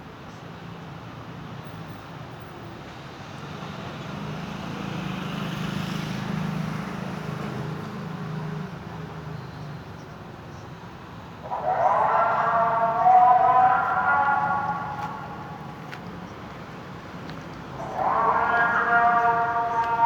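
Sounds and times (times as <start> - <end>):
vehicle passing by: 3.4 - 9.3.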